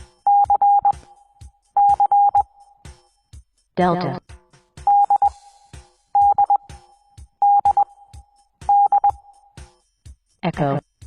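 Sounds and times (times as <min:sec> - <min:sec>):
morse code beep tone: 0:00.3 - 0:01.0, 0:01.8 - 0:02.6, 0:04.9 - 0:05.6, 0:06.2 - 0:06.8, 0:07.4 - 0:09.3.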